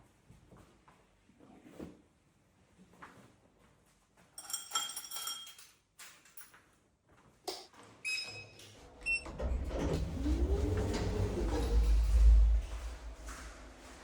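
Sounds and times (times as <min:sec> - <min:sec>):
low rumbling noise: 0:09.0 - 0:14.0.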